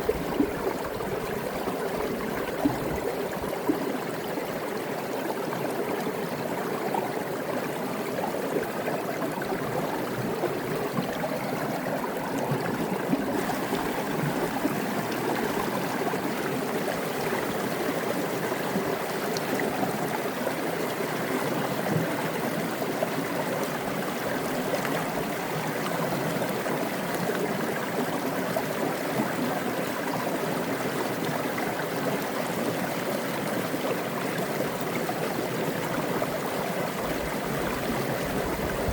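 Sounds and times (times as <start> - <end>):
creek water cascading over rock: 8.6 - 38.9.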